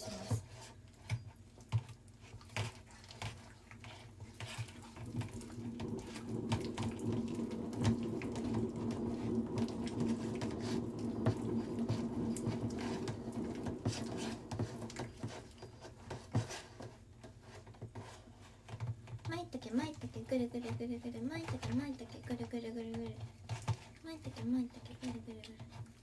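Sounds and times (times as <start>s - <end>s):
steady hum: 5.0s - 15.6s.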